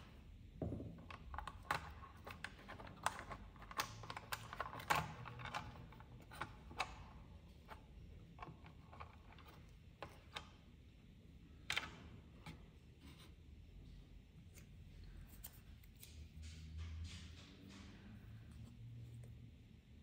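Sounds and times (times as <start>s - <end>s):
computer hardware clicks and scraping: 1.0s - 10.6s, 14.5s - 19.3s.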